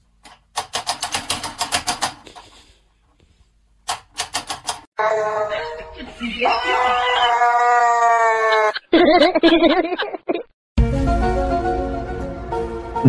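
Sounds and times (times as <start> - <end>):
rapid sharp clicks: 3.8 - 4.9.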